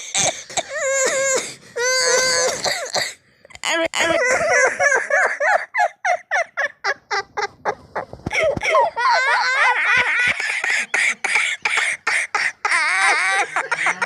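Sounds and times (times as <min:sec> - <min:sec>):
boys laughing: 0:04.0 - 0:14.0.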